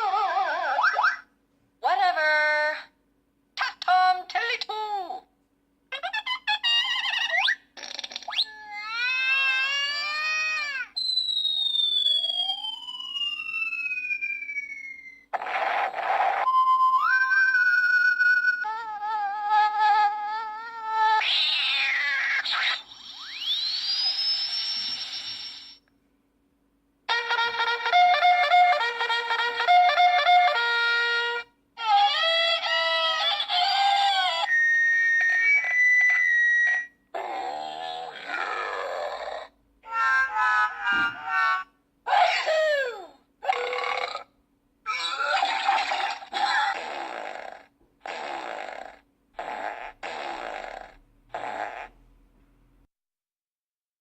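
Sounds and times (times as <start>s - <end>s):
siren-like electronic tone: 11.0s - 18.7s, 23.0s - 25.8s, 34.5s - 36.9s
falling electronic whistle: 11.0s - 18.8s, 23.0s - 25.8s, 34.5s - 37.0s.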